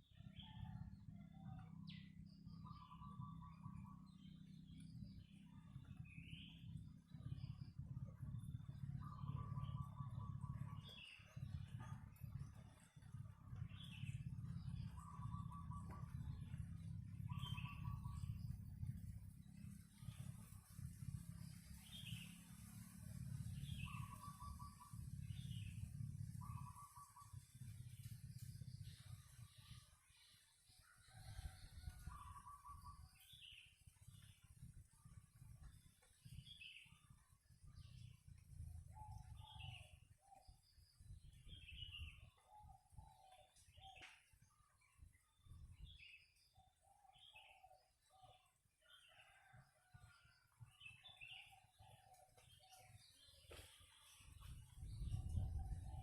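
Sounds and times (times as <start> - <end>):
faint low rumble: 0.0 - 56.0
birds chirping: 0.2 - 20.6, 21.7 - 49.5, 50.6 - 56.0
lower repeated bird notes: 1.5 - 19.1, 23.4 - 49.5.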